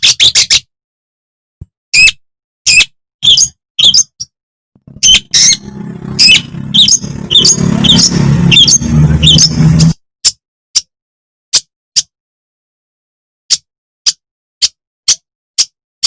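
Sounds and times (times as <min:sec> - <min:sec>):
bird sharp calls: 0:00.0 - 0:00.7, 0:02.0 - 0:04.2, 0:04.9 - 0:10.0
low hum: 0:04.8 - 0:10.0.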